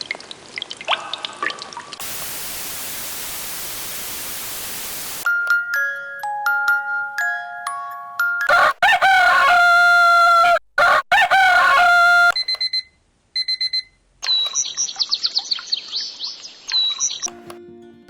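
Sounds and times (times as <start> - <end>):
recorded rooster crow: 8.5 - 12.4
short electronic beeps: 12.4 - 14.4
high bird-like chirps: 14.2 - 17.3.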